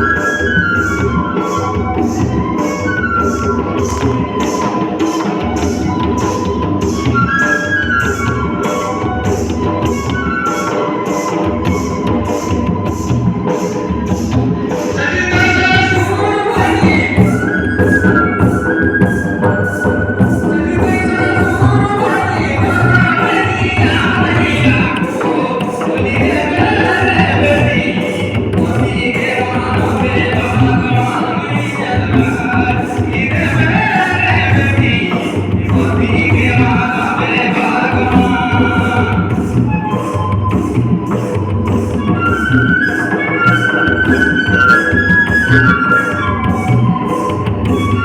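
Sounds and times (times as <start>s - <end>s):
percussion beat: 0.0s - 48.0s
person singing folk song: 14.8s - 18.2s, 20.4s - 40.0s.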